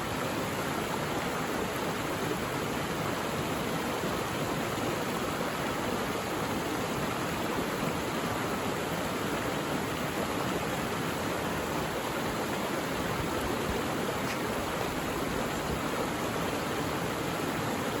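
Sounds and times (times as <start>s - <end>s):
stream rushing over rocks: 0.0s - 18.0s.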